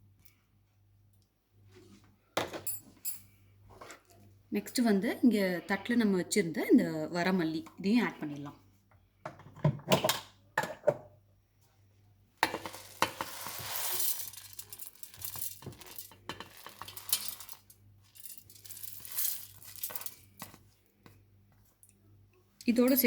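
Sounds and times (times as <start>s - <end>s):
seeds pouring into a jar: 12.5s - 20.6s.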